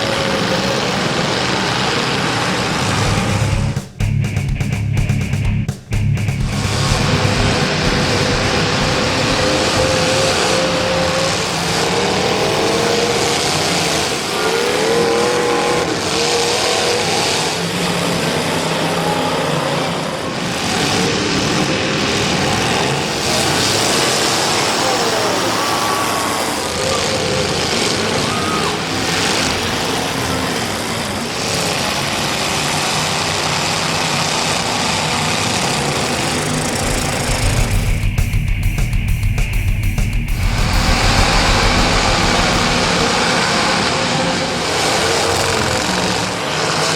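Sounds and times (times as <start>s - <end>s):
car engines revving: 0.0s - 46.9s
voices: 6.2s - 32.4s.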